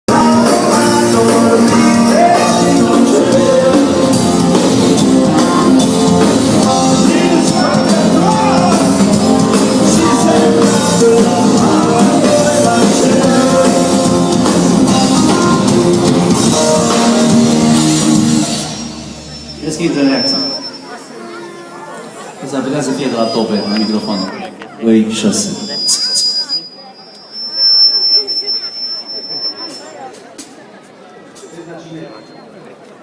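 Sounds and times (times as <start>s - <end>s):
person singing: 0.1s - 18.3s
rock band playing amplified: 0.1s - 21.5s.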